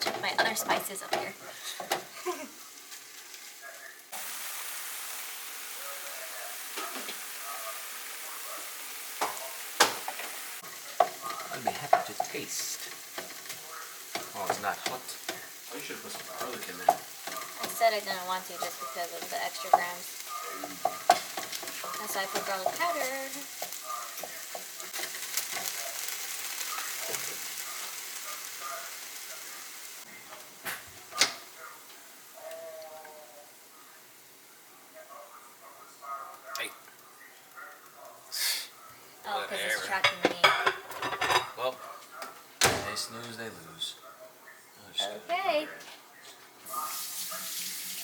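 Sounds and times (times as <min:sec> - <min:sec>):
meat sizzling in a frying pan: 0:00.0 - 0:41.7, 0:46.6 - 0:48.0
utensil knocking against pan: 0:11.0 - 0:12.4.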